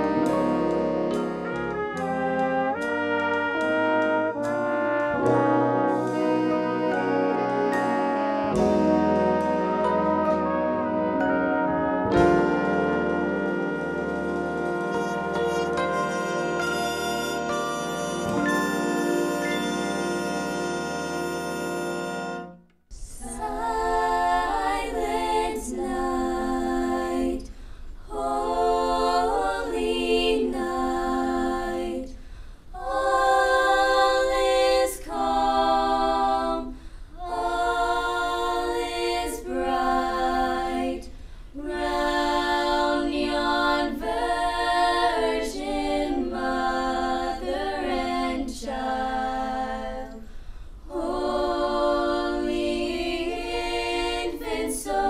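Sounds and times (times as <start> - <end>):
choir singing a cappella: 0.0 - 55.0
held instrumental chord: 4.4 - 22.6.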